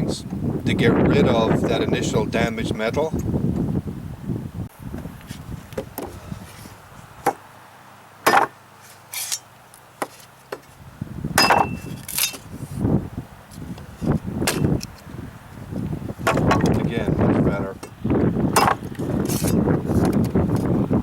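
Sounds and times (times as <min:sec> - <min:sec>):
machete chopping into wood: 0:08.2 - 0:09.4, 0:11.4 - 0:12.4, 0:14.4 - 0:14.8, 0:18.6 - 0:19.6.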